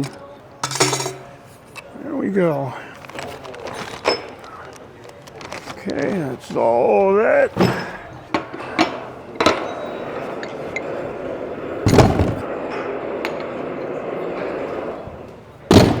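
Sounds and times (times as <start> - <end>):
metal parts clinking: 0.0 - 1.9
heavy thud: 11.9 - 12.5, 15.7 - 16.0.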